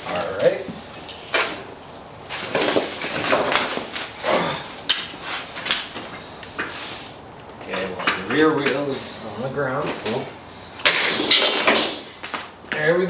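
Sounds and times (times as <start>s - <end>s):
metal parts clanking: 10.8s - 12.2s.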